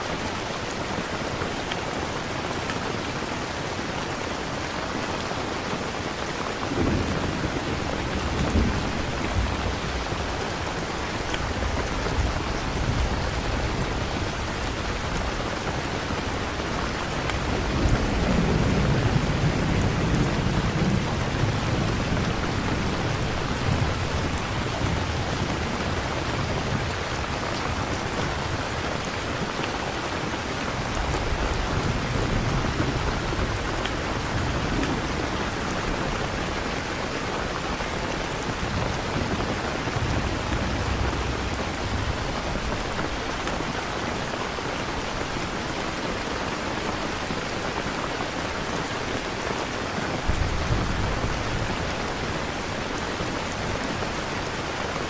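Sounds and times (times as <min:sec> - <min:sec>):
steady rain falling: 0:00.0 - 0:55.0
distant thunder rumbles: 0:06.6 - 0:15.5, 0:16.2 - 0:29.0, 0:30.4 - 0:43.6, 0:50.1 - 0:54.4.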